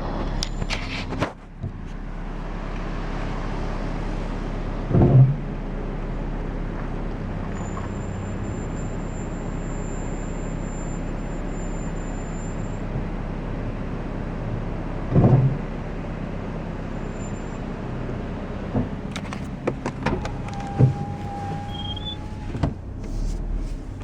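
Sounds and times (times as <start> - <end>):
brakes squealing: 0.0 - 4.1, 5.7 - 24.0
car and road noise: 0.0 - 24.0.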